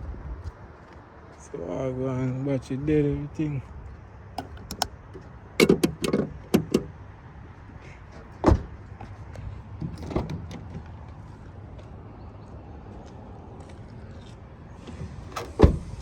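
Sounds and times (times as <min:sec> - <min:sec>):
sharp clicks and clunks: 0:04.4 - 0:07.0.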